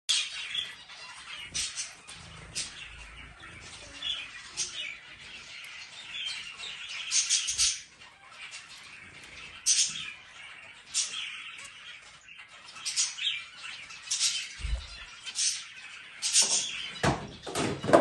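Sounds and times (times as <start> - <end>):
finch chirping: 0.1 - 18.0.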